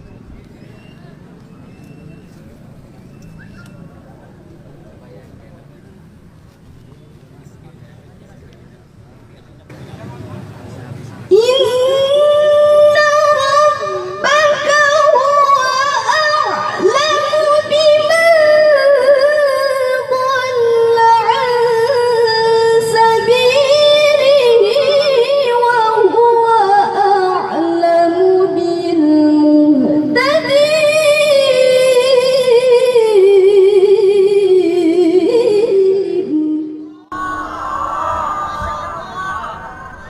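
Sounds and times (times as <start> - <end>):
girl reciting melodically: 11.3 - 37.4.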